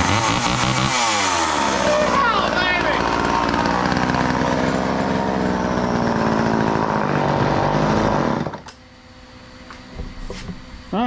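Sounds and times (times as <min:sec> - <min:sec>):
chainsaw engine running: 0:00.0 - 0:08.7.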